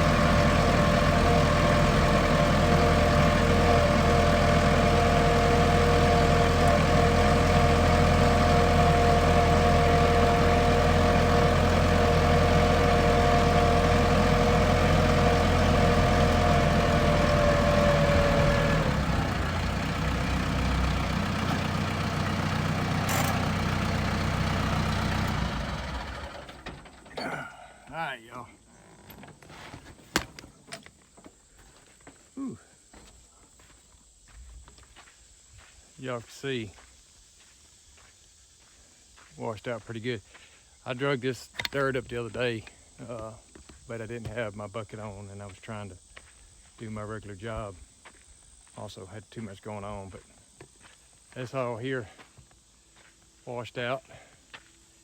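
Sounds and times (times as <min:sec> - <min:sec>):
tractor engine running: 0:00.0 - 0:28.1.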